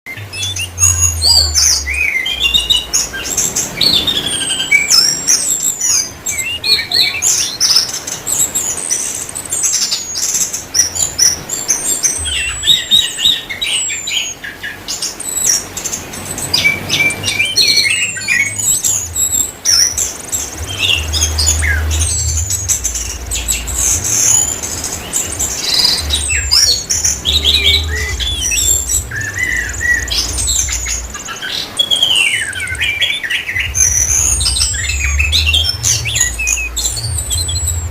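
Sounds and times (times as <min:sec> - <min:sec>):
thrush singing: 0:00.1 - 0:37.9
low rumble: 0:00.2 - 0:05.0, 0:19.0 - 0:31.2, 0:33.6 - 0:37.9.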